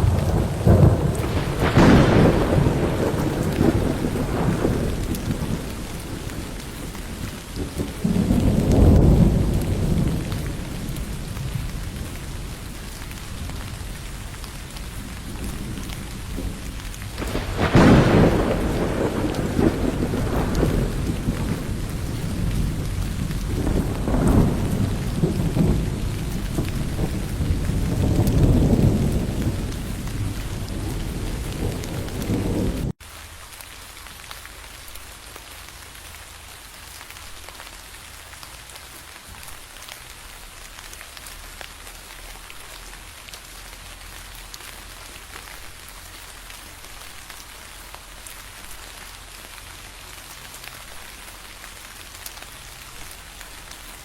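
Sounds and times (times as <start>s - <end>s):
thunder rumbling: 0.0s - 33.0s
heavy rain: 0.0s - 54.0s
raindrop ticks: 0.0s - 54.0s.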